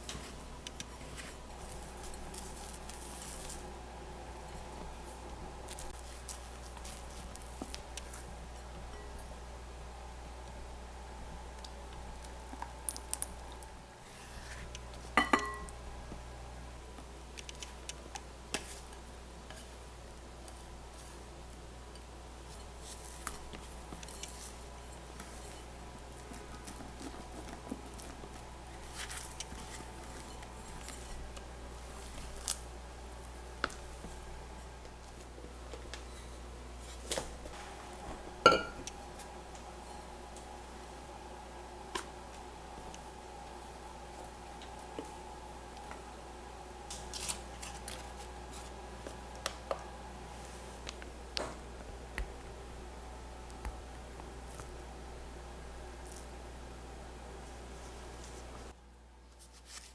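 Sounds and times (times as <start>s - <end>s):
utensil clinking against bowl: 15.2s - 15.7s, 38.4s - 39.0s.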